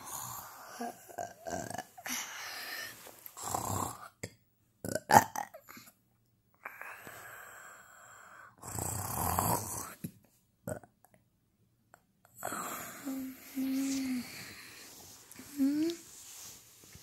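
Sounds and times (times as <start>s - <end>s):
child snoring: 0.0s - 4.2s, 6.6s - 10.0s, 12.4s - 16.5s
child humming moans: 12.5s - 14.7s, 15.4s - 16.1s.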